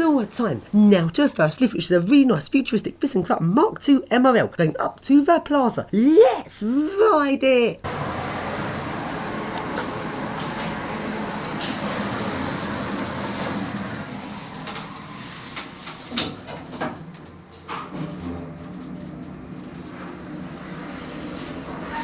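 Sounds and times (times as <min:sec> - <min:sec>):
lift running hum: 0:07.9 - 0:16.1.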